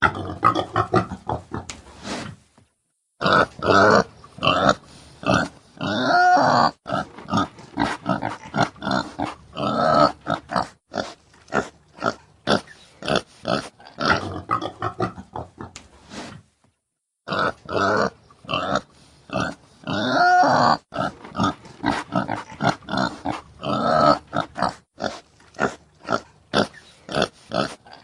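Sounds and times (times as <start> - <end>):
boar grunting: 17.3 - 28.0.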